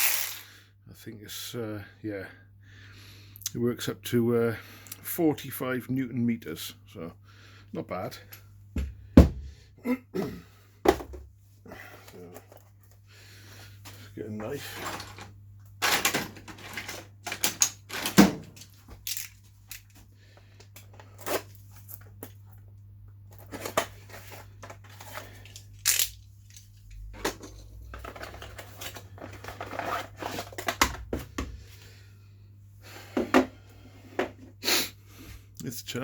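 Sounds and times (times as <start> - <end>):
packaging tearing and crinkling: 0.0 - 0.4.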